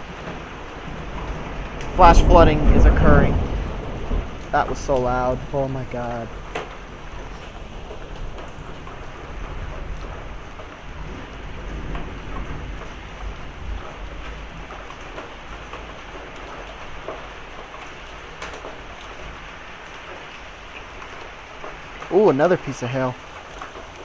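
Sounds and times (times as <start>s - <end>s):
thunder rumbling: 0.0s - 14.9s
heavy rain pouring: 0.0s - 24.0s.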